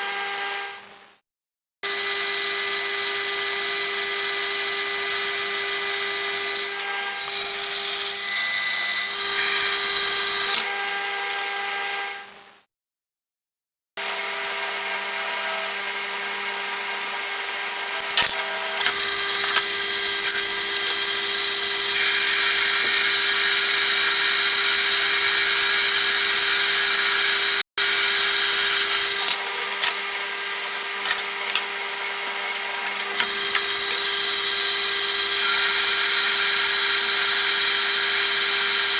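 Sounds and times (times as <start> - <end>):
metal lathe humming: 2.2 - 10.6, 18.8 - 38.9
hissing cutting noise: 18.8 - 38.9.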